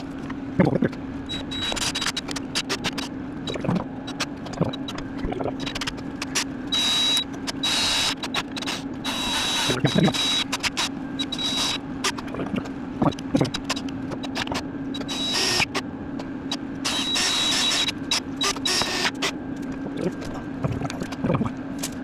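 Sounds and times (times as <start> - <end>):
steady low hum: 0.0 - 22.0
short rasping bursts: 13.5 - 15.8, 16.8 - 19.3.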